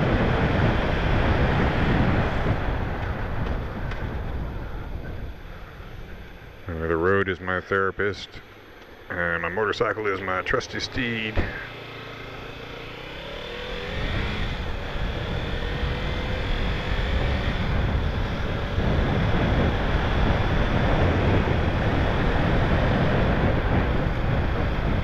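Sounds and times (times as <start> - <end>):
motorcycle engine accelerating: 0.0 - 7.1, 8.4 - 25.0
wind rushing over microphone: 0.0 - 7.2, 12.5 - 25.0.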